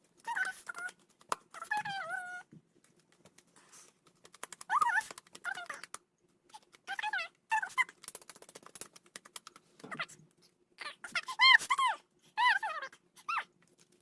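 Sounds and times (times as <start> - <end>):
pet animal whining: 0.2 - 2.5, 4.7 - 5.9
quick clicks: 7.9 - 9.9.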